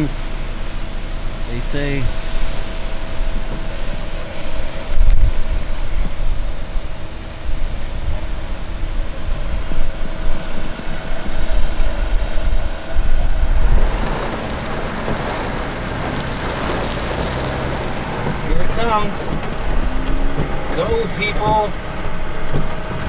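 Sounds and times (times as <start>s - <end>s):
wind buffeting microphone: 2.1s - 23.0s
heavy rain hissing: 13.4s - 23.0s.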